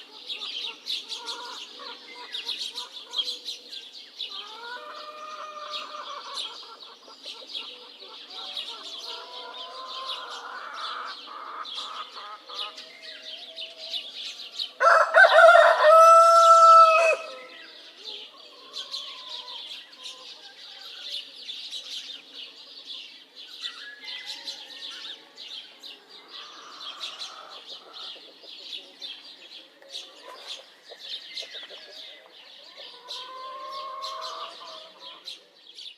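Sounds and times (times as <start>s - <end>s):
small birds chirping: 0.0s - 35.9s
hens clucking: 4.4s - 12.9s, 26.2s - 35.6s
rooster crowing: 14.8s - 17.5s.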